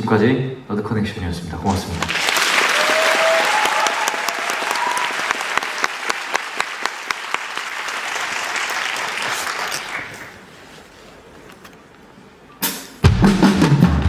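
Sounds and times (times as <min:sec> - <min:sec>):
audience applauding: 0:02.0 - 0:10.5.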